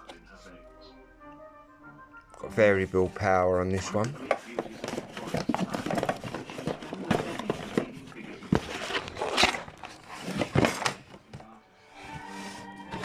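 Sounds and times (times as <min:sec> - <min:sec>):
packaging rustling: 0:03.9 - 0:13.0
box knocks and clicks: 0:04.0 - 0:09.6.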